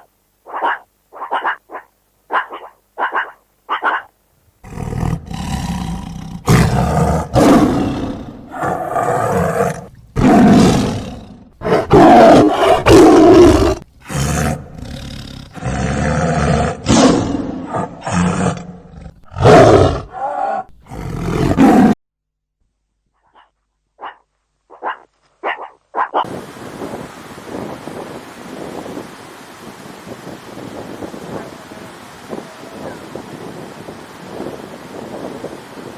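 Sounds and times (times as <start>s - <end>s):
large animal roaring and growling: 4.6s - 22.0s
wind noise: 26.2s - 35.9s.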